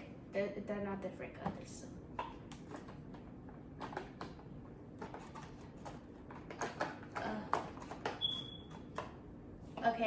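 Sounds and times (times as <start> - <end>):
plastic containers clicking and knocking: 2.2 - 9.2.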